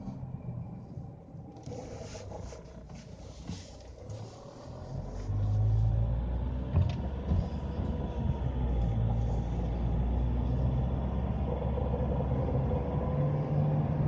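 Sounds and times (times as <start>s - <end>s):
car engine low rumble: 0.0s - 14.0s.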